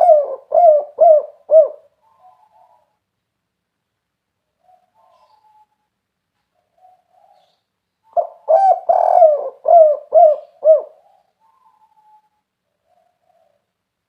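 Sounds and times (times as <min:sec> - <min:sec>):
dove cooing: 0:00.0 - 0:03.0, 0:04.6 - 0:05.8, 0:06.6 - 0:13.7.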